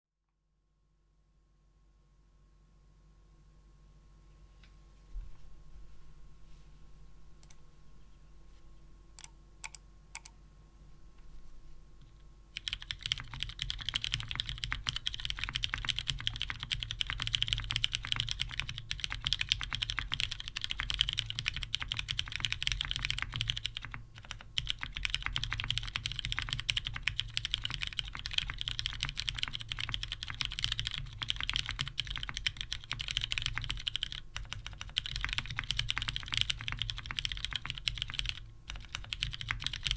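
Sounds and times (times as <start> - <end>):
mechanical keyboard typing: 9.2 - 10.4, 12.6 - 39.9.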